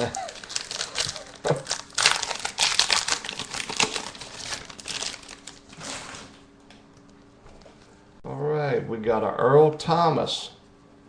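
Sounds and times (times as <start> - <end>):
plastic wrapper crinkling: 0.0 - 6.2.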